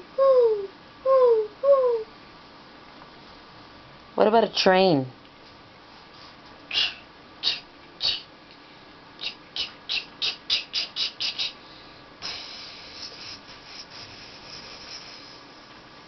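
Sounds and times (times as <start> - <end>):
boy imitating steam train: 0.0 - 2.1, 6.7 - 8.3, 9.2 - 11.6, 12.2 - 15.6.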